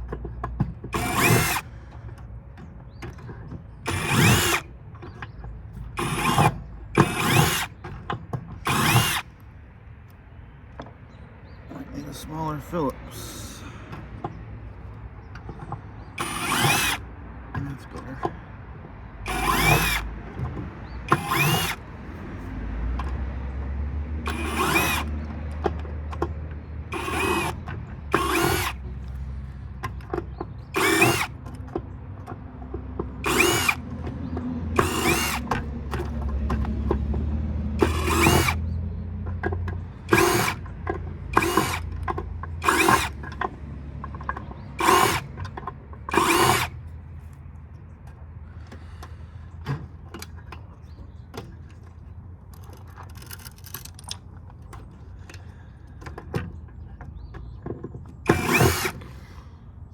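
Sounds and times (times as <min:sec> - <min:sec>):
power drill motor whining: 0:00.8 - 0:02.1, 0:03.8 - 0:05.2, 0:05.9 - 0:09.4, 0:16.1 - 0:18.4, 0:19.2 - 0:20.1, 0:20.8 - 0:22.2, 0:24.2 - 0:25.6, 0:26.9 - 0:29.2, 0:30.6 - 0:31.4, 0:33.2 - 0:33.9, 0:34.7 - 0:36.2, 0:37.8 - 0:38.7, 0:39.8 - 0:40.7, 0:41.3 - 0:43.4, 0:44.2 - 0:46.8, 0:58.3 - 0:59.4.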